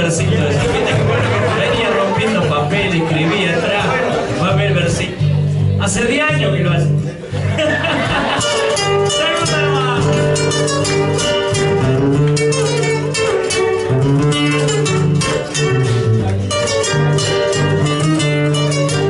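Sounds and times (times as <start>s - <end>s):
folk guitars playing: 0.0s - 19.0s.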